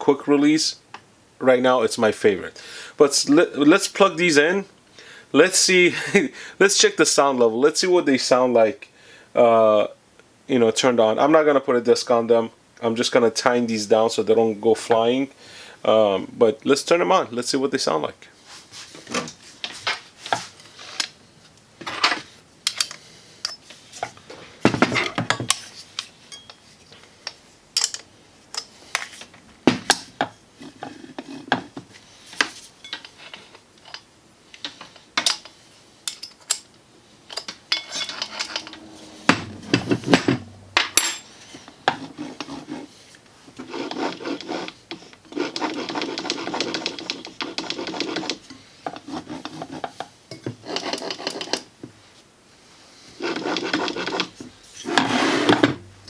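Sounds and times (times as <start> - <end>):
metal clinks and knocks: 37.3 - 41.3
rubbing and rattling: 37.8 - 42.9.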